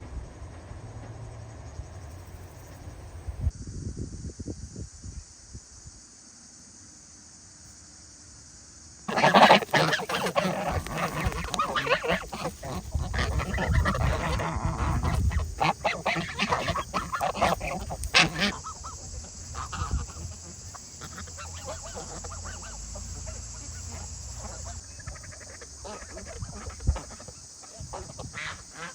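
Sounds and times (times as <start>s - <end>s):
geese honking: 9.1s - 28.9s.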